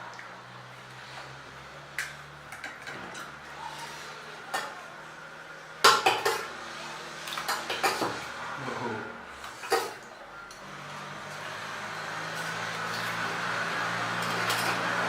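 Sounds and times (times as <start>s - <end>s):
plate and utensil clatter: 5.9s - 6.5s, 7.4s - 8.2s.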